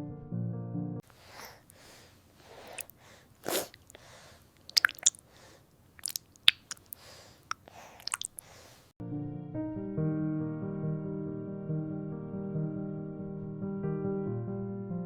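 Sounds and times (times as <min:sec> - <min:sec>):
baby breathing: 0:01.1 - 0:05.7, 0:06.9 - 0:08.9
baby lip smacks and clicks: 0:04.6 - 0:05.2, 0:06.0 - 0:08.5.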